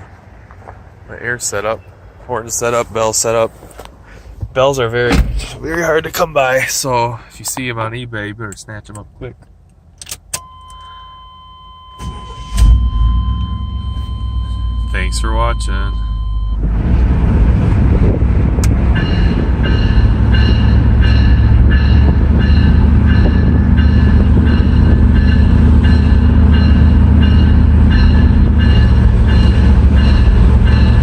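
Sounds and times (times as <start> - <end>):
steady low drone: 15.6 - 31.0
locomotive bell ringing: 18.9 - 31.0.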